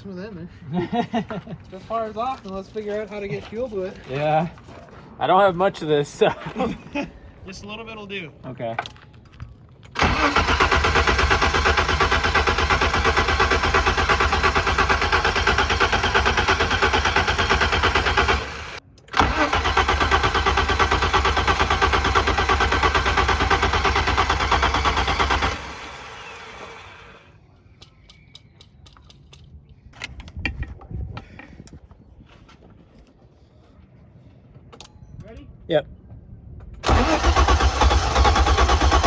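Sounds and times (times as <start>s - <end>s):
starter motor cranking engine: 10.0s - 27.3s, 36.8s - 39.0s.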